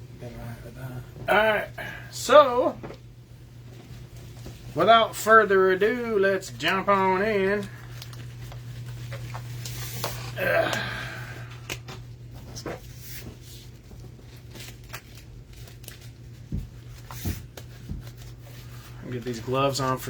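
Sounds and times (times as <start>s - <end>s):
low electrical hum: 0.0s - 20.0s
packaging rustling: 6.1s - 10.4s, 11.6s - 20.0s.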